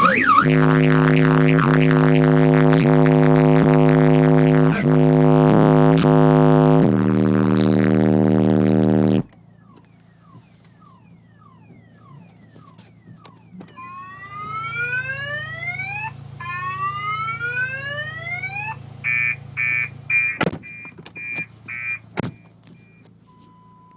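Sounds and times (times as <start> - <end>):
low bass drone: 0.0 - 9.3
sharp thumps: 0.0 - 9.3
car alarm siren: 0.0 - 23.1.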